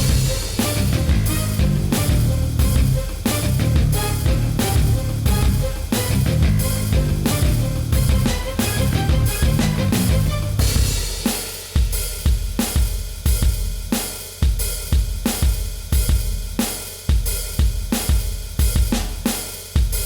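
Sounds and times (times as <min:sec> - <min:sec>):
drum kit beat: 0:00.0 - 0:20.0.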